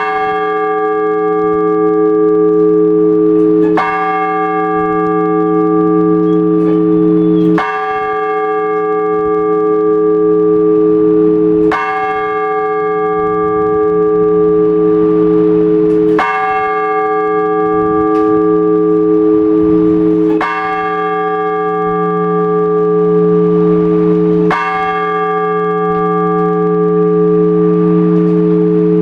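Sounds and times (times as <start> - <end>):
church bell tolling: 0.0 - 29.0.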